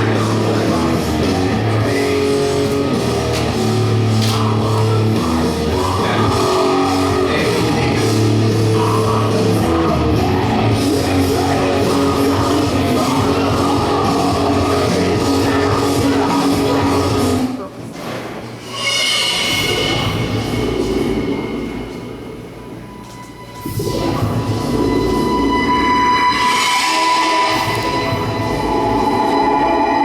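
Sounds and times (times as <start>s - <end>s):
hard rock music with vocals: 0.0s - 17.5s.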